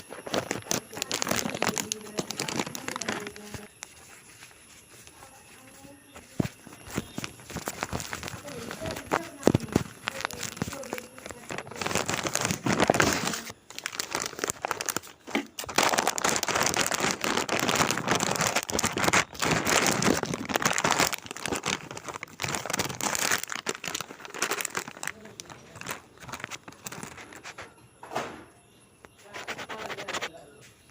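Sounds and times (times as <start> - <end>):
plastic packaging crinkling: 0.0 - 27.8.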